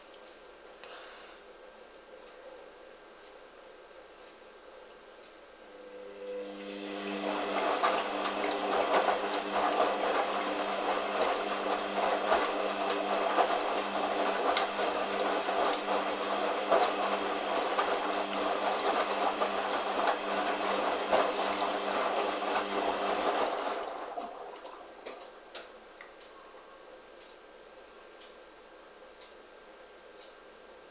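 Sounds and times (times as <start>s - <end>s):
water rushing in washing machine: 5.8s - 25.3s.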